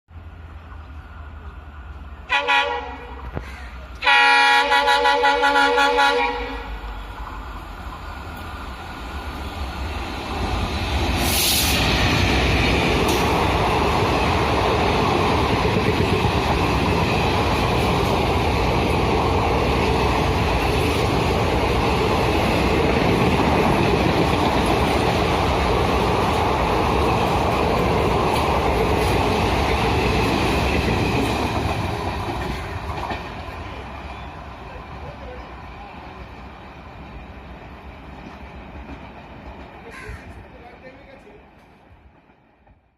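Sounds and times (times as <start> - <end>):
train passing: 0.1 - 42.9
short hiss: 11.2 - 11.9.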